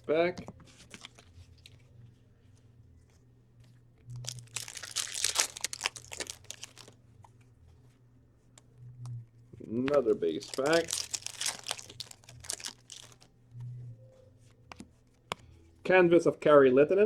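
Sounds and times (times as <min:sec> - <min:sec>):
foil wrapper tearing and crinkling: 0:04.2 - 0:07.0, 0:10.0 - 0:13.3.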